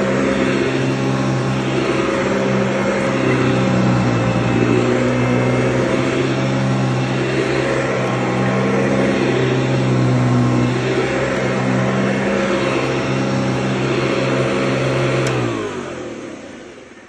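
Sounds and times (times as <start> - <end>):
vacuum cleaner motor hum: 0.0 - 17.0.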